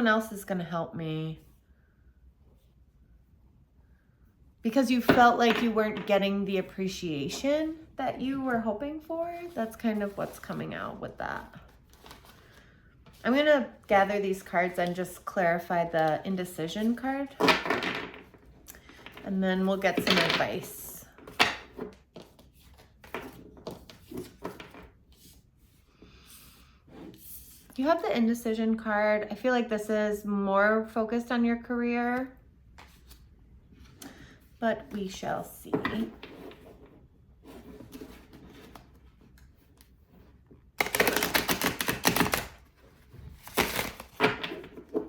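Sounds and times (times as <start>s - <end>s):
cards being shuffled: 11.4s - 13.3s, 21.3s - 25.4s, 32.8s - 33.3s, 40.8s - 44.4s
cards rustling: 11.4s - 15.0s, 40.8s - 44.2s.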